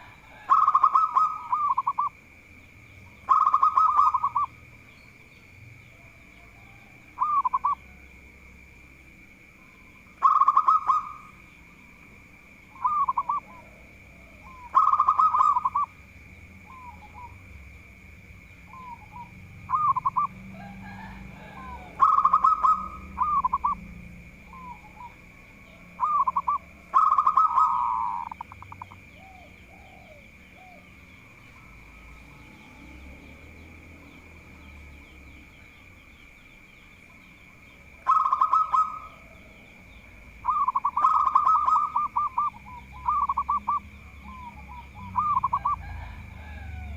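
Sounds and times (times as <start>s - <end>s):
dove cooing: 0.0s - 2.2s, 3.1s - 4.6s, 5.9s - 8.1s, 9.6s - 12.0s, 12.6s - 16.0s, 16.6s - 17.6s, 18.7s - 32.6s, 37.1s - 46.9s.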